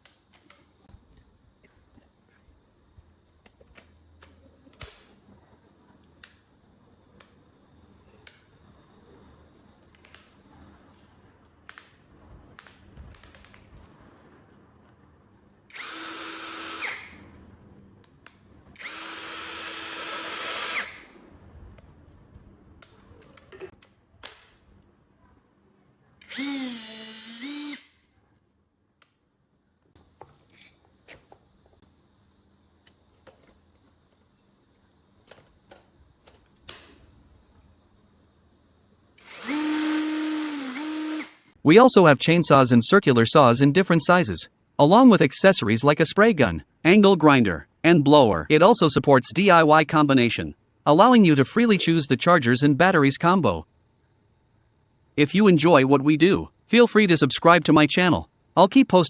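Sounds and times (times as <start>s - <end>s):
power tool motor whining: 15.7s - 17.2s, 18.8s - 21.1s, 26.2s - 27.9s, 39.2s - 41.5s.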